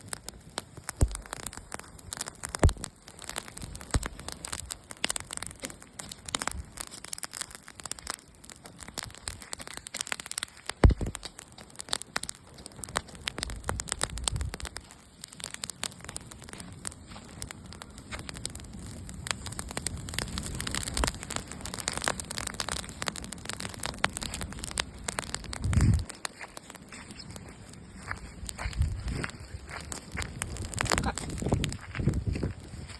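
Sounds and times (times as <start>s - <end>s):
bonfire crackling and popping: 0.0s - 32.9s
dull low thumps: 10.8s - 11.2s.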